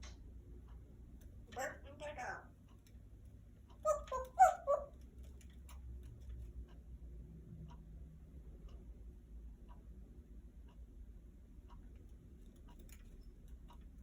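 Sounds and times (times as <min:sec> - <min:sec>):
clock ticking faintly: 0:00.0 - 0:01.6, 0:02.4 - 0:14.0
pet animal squeaky calls: 0:03.8 - 0:05.0.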